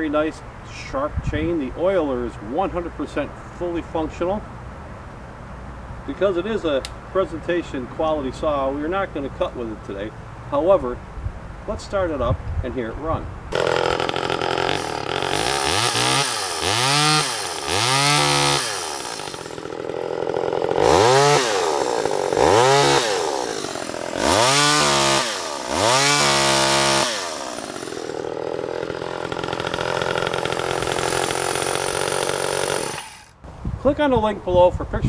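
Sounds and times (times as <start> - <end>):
chainsaw idling and revving: 13.5 - 33.6.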